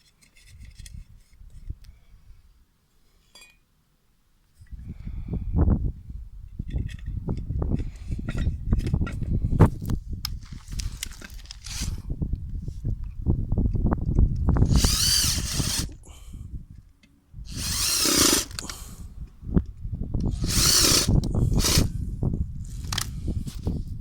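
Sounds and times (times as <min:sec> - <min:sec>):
grinder motor whining: 0:14.6 - 0:16.0, 0:17.5 - 0:18.8, 0:20.2 - 0:21.9.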